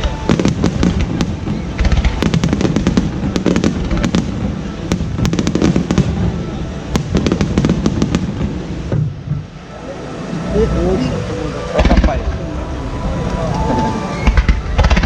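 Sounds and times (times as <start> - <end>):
fireworks crackling pops: 0.0 - 9.5, 11.8 - 12.4, 13.2 - 15.0
fireworks booming bursts: 0.0 - 9.7, 11.8 - 15.0.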